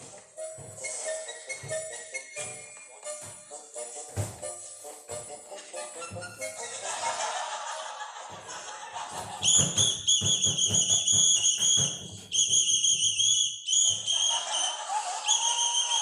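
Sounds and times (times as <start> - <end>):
quick knocks: 8.3 - 13.2
warbling whistle blasts: 11.3 - 16.0.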